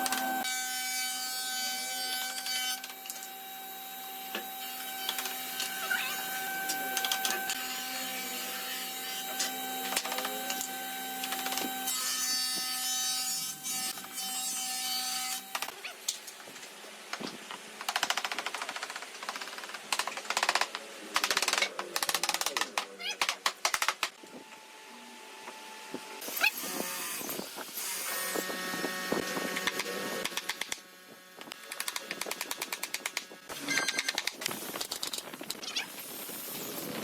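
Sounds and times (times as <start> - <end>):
power tool whining on wood: 0.0 - 0.7, 1.8 - 14.2.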